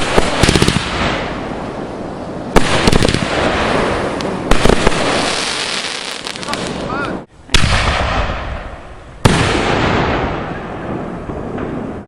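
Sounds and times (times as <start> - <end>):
fireworks crackling pops: 0.0 - 1.5, 2.5 - 10.6
fireworks bangs: 0.0 - 12.0.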